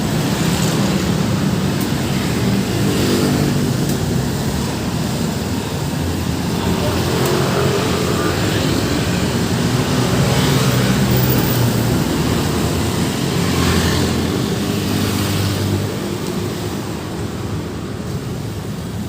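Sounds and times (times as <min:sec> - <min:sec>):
large vehicle engine drone: 0:00.0 - 0:19.0
tyre and traffic noise: 0:00.0 - 0:19.0.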